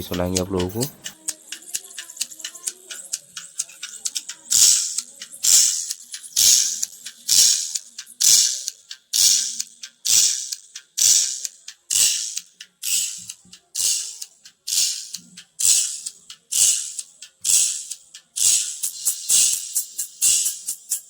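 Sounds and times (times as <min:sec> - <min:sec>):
thin treble music beat: 0:00.0 - 0:21.0.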